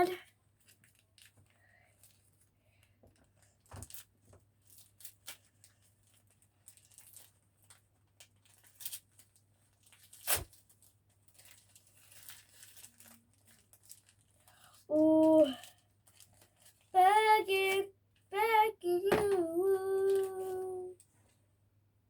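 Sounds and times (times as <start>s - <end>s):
packaging tearing and crinkling: 3.7s - 16.9s.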